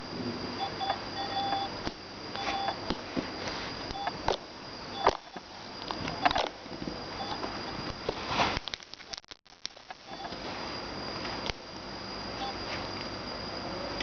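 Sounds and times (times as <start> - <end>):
steady high tone: 0.0 - 4.2
short electronic beeps: 0.6 - 1.7, 2.4 - 2.8, 7.2 - 7.4.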